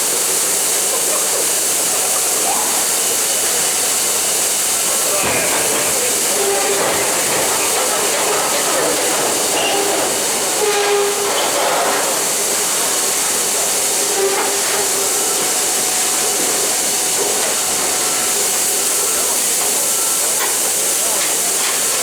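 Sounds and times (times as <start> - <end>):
faint squeals: 5.2 - 12.0.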